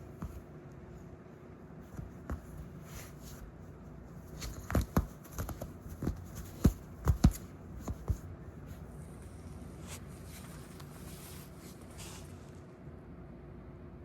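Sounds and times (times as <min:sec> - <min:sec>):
puppy scuffling and rustling: 0:00.0 - 0:12.7
sharp taps and knocks: 0:04.4 - 0:08.2.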